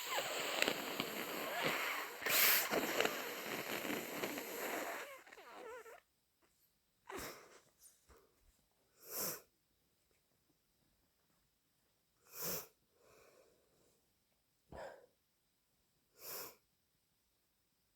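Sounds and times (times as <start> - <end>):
breath through congested nose: 0.0 - 6.0.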